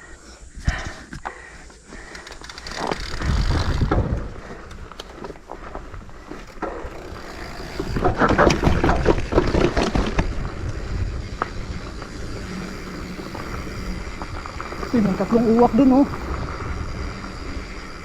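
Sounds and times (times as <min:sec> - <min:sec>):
bike tyres crunching on dirt: 0:00.0 - 0:18.0
rattling clicks: 0:02.0 - 0:05.3.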